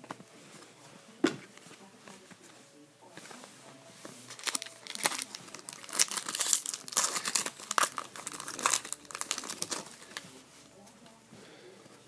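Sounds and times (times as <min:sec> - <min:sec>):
foil wrapper tearing and crinkling: 0:04.3 - 0:10.2.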